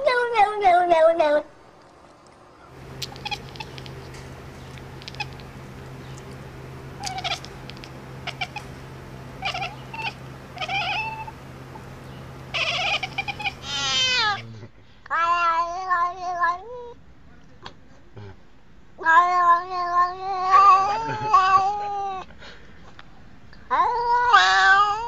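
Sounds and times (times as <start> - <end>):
steady low hum: 1.3 - 15.1
cat chirping: 2.6 - 14.4
cat meowing: 3.0 - 4.0, 5.0 - 5.5, 7.0 - 8.8, 9.4 - 11.3, 12.5 - 14.4, 15.1 - 16.9, 19.0 - 22.2, 23.7 - 25.0.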